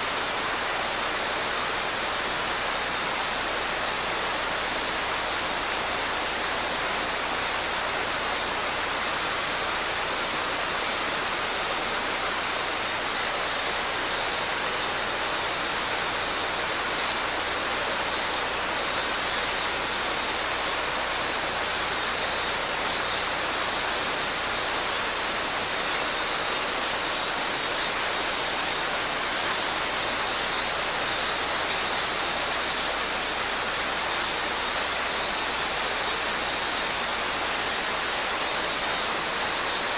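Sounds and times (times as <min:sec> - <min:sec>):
cicadas singing in pulses: 0:00.0 - 0:39.9
stream rushing over rocks: 0:00.0 - 0:39.9.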